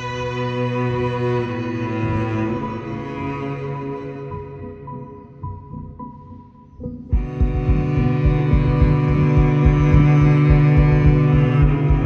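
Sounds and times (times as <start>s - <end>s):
ambient music low notes: 0.0s - 12.0s
soft low pulses: 6.8s - 12.0s.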